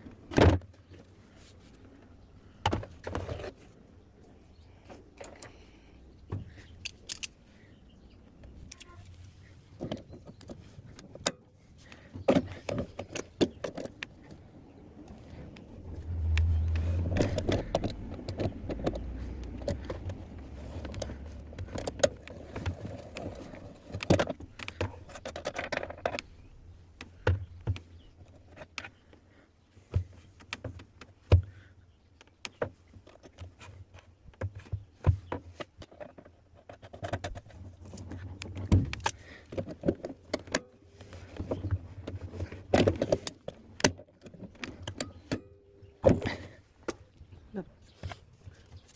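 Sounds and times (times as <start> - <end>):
metal parts and tools clinking: 6.8 - 7.4, 16.7 - 26.2
low rumble: 14.4 - 22.4.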